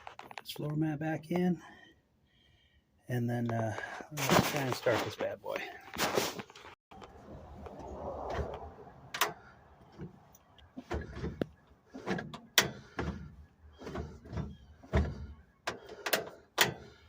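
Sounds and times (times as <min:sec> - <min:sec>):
truck cab and door clunks: 0:07.7 - 0:17.0.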